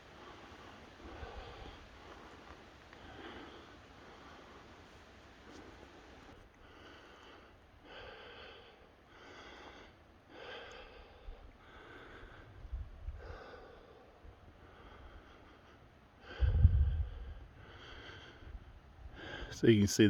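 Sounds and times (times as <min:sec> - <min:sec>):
person breathing hard: 0:00.0 - 0:19.6.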